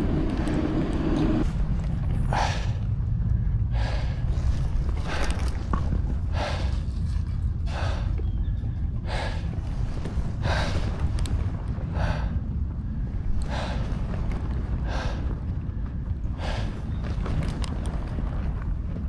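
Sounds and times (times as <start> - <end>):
steady low rumble: 0.0 - 19.0
person breathing hard: 2.2 - 17.4.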